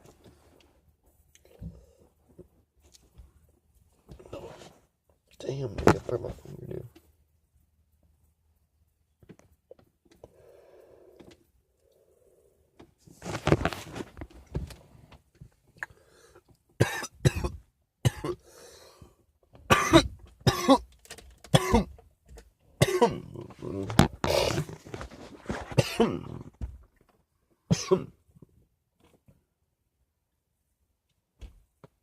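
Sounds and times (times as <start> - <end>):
man clearing throat: 16.8 - 18.4, 19.7 - 20.9, 21.6 - 22.0, 22.8 - 24.8, 25.7 - 26.5, 27.7 - 28.2
man coughing hard: 16.8 - 18.4, 19.7 - 20.9, 21.5 - 22.0, 22.8 - 24.7, 25.7 - 26.4, 27.7 - 28.2.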